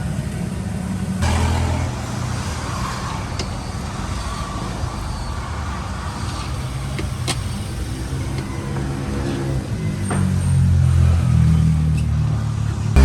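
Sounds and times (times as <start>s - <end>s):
car engine running: 1.2s - 3.9s.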